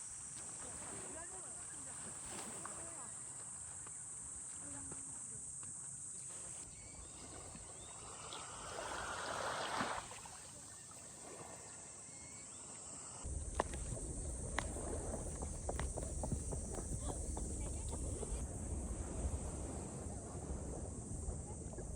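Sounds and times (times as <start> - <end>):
insects droning: 0.0 - 21.9
wind rumble on microphone: 13.2 - 21.9.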